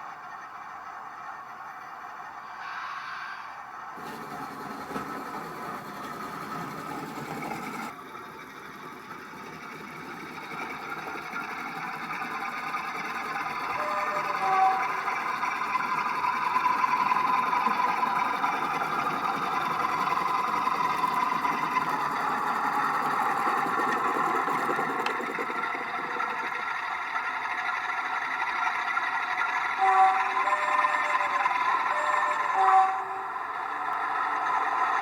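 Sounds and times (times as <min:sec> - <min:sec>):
diesel engine sound from small speaker: 0:00.0 - 0:35.0
short steady tones: 0:09.8 - 0:35.0.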